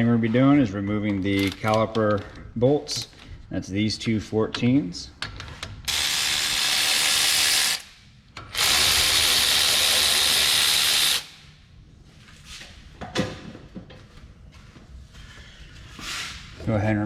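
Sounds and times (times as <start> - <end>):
power tool whirring: 5.9 - 11.4.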